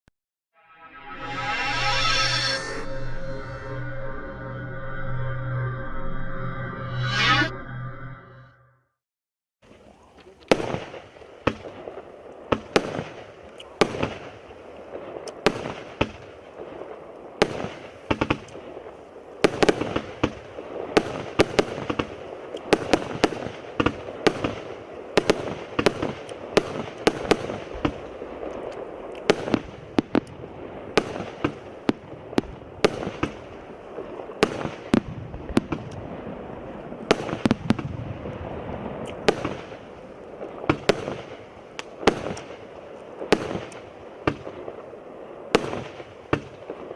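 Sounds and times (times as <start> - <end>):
firework shots and bangs: 10.5 - 44.8, 45.5 - 46.9.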